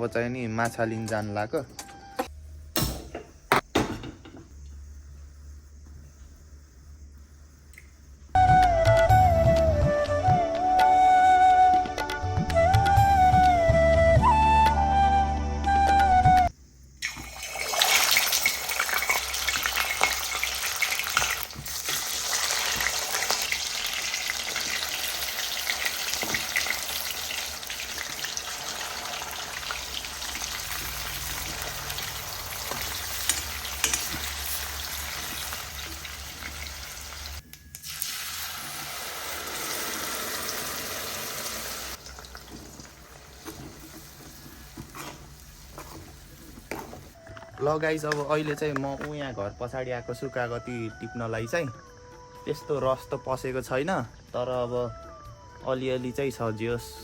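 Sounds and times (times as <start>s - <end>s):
fish frying in hot oil: 17.0s - 46.4s.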